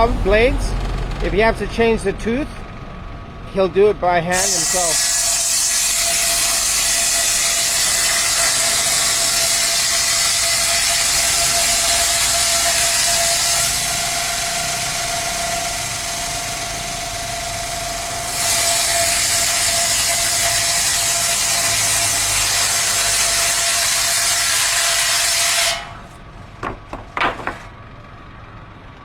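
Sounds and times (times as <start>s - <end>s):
power saw cutting log: 0.0s - 2.6s, 4.3s - 27.7s
light knocks: 26.1s - 27.7s.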